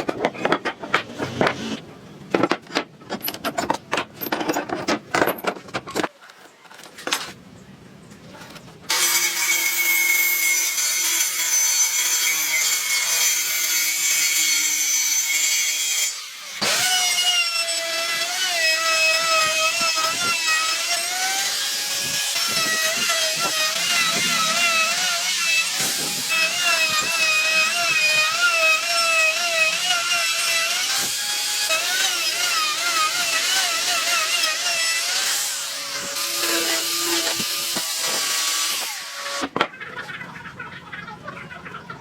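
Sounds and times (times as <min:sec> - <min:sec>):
electric power tool cutting: 0:08.9 - 0:39.5
rasping strokes on wood: 0:21.2 - 0:28.7.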